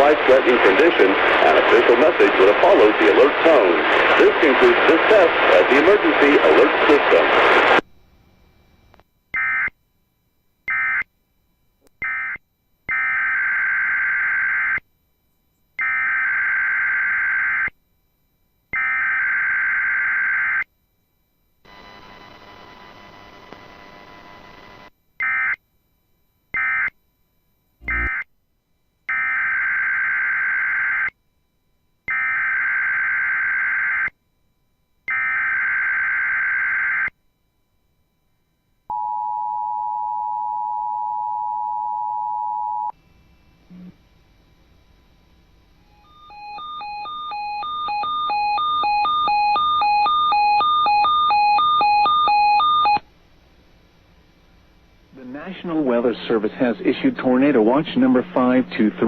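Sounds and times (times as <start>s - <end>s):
buzzing digital data bursts: 27.8s - 28.2s.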